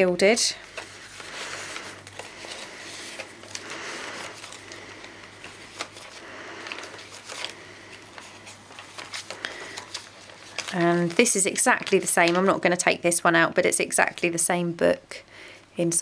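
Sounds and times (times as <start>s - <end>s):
paper and card rustling: 0.3s - 12.8s.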